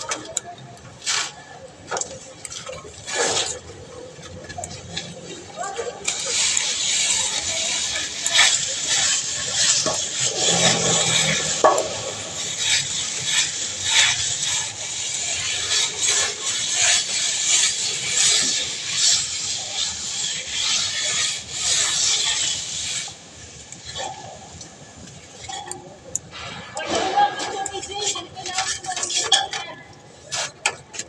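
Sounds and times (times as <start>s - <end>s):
hand tool scraping hard surface: 4.7s - 23.1s, 26.3s - 31.0s.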